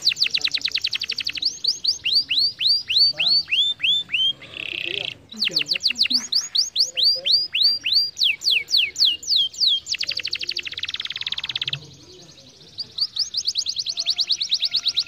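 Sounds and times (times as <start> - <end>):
canary singing: 0.0 - 15.0.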